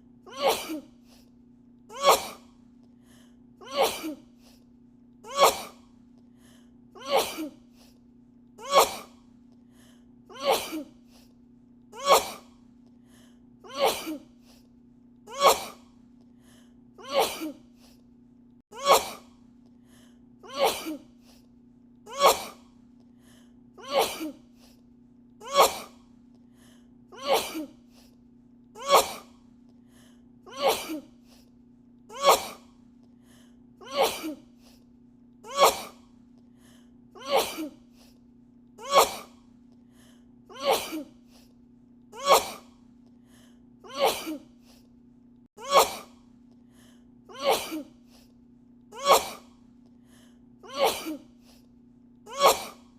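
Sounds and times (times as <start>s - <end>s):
faint low hum: 0.0s - 18.6s, 19.2s - 45.5s
woman sneezing: 0.3s - 0.9s, 2.0s - 2.5s, 5.3s - 5.8s, 8.6s - 9.2s, 12.0s - 12.5s, 15.3s - 15.8s, 17.0s - 17.6s, 18.8s - 19.3s, 22.1s - 22.6s, 25.4s - 26.0s, 28.8s - 29.4s, 32.2s - 32.6s, 35.5s - 36.0s, 37.2s - 37.8s, 38.8s - 39.4s, 40.6s - 41.1s, 42.2s - 42.7s, 45.6s - 46.2s, 47.4s - 47.9s, 49.0s - 49.5s, 50.7s - 51.3s, 52.3s - 52.9s.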